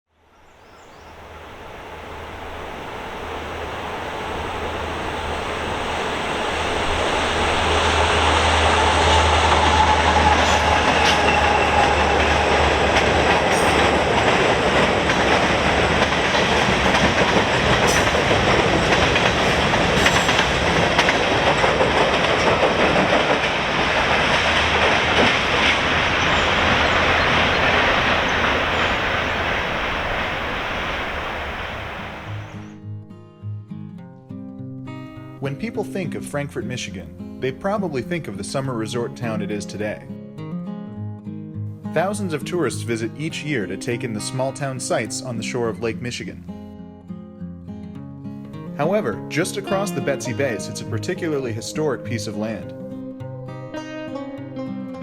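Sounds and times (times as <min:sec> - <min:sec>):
low hum: 0:00.4 - 0:32.7
train clattering on rails: 0:01.0 - 0:32.7.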